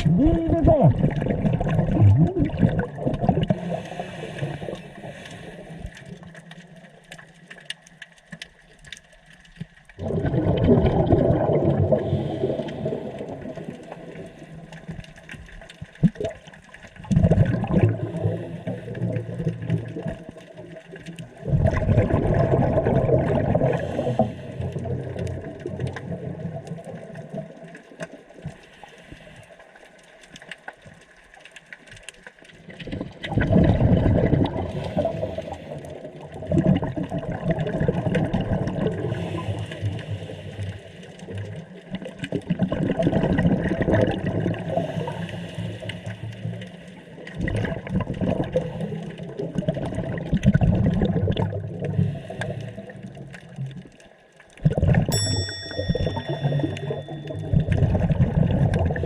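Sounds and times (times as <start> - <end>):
regulator exhaled bubbles: 0.0 - 6.2, 10.0 - 14.6, 17.0 - 20.4, 21.4 - 26.6, 32.8 - 53.4, 56.0 - 59.0.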